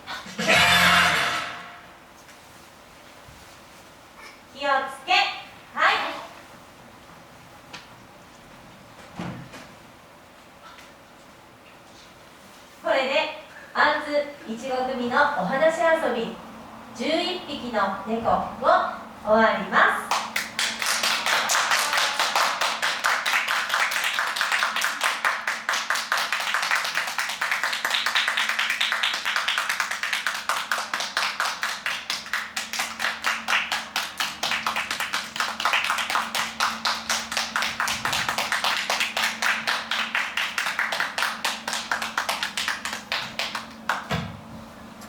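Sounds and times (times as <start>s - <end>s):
small group clapping: 20.1s - 44.2s.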